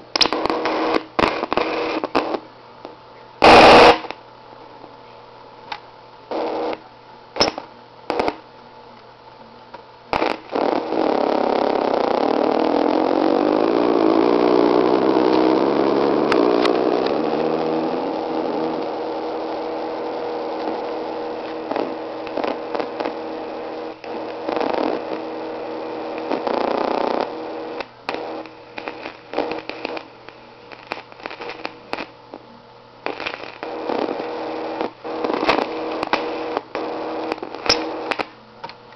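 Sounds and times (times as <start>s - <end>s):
circuit-bent electronic noise: 0.0s - 38.9s
steady electronic hum: 0.0s - 38.9s.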